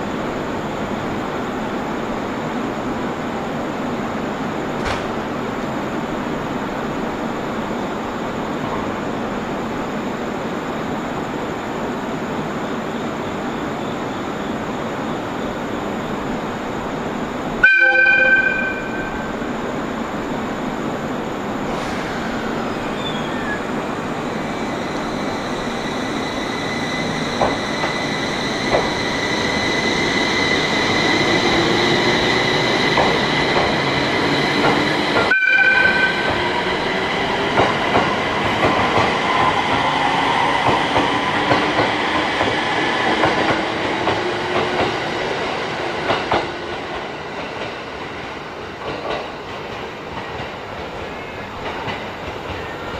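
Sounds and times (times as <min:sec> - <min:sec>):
train horn blasts: 0:17.6 - 0:19.4, 0:35.3 - 0:36.7.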